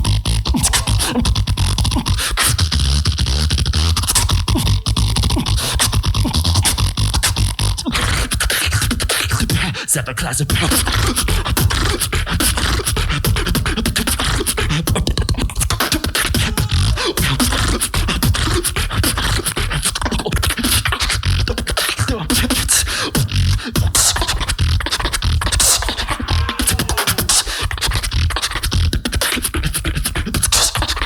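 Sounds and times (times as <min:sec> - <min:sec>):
beatboxing: 0:00.0 - 0:31.0
heavy bass line: 0:16.2 - 0:18.1, 0:25.4 - 0:28.3.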